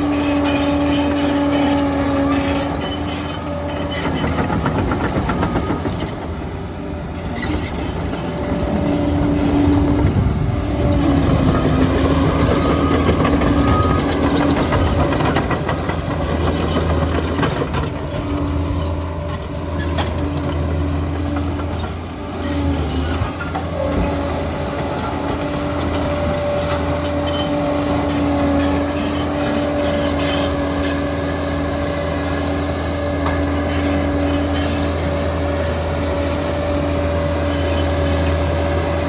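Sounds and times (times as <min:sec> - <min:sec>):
diesel engine running: 0:00.0 - 0:39.0
steel tracks clattering: 0:07.2 - 0:31.0.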